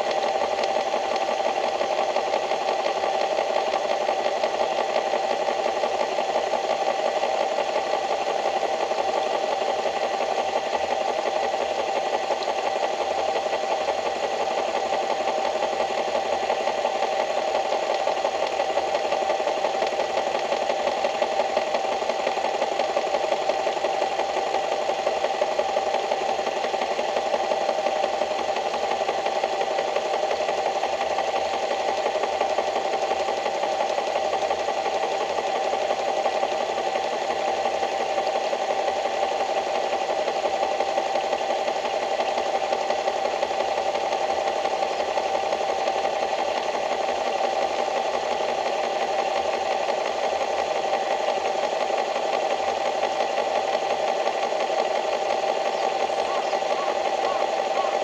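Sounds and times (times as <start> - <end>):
small engine buzzing: 0.0 - 58.0.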